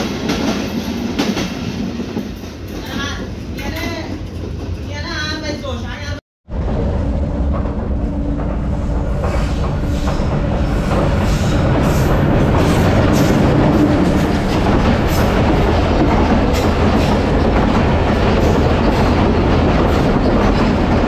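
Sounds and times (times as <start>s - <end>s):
train passing at high speed: 0.0s - 21.0s
wheel clatter over rail joints: 7.0s - 21.0s.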